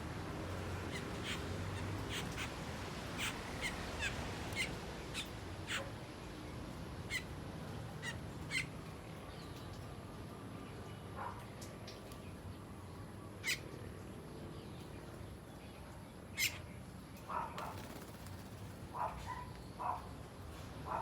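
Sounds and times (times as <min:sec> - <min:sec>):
starlings calling: 0:00.8 - 0:05.9, 0:07.1 - 0:07.3, 0:08.0 - 0:08.7.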